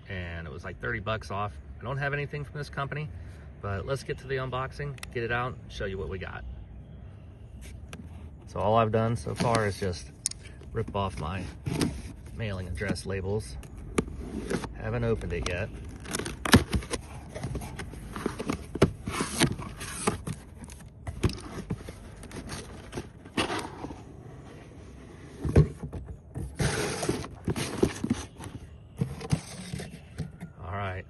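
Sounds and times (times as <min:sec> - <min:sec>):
cardboard scraping and rustling: 0:09.2 - 0:10.0, 0:10.8 - 0:30.5.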